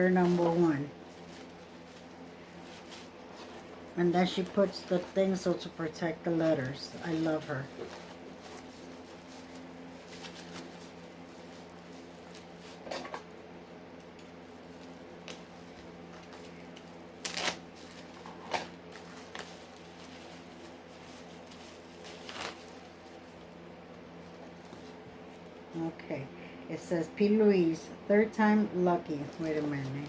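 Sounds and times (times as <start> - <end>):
paper rustling and crinkling: 0.0 - 5.7, 6.5 - 12.9, 14.2 - 23.6, 29.2 - 30.0
steady low hum: 0.0 - 30.0.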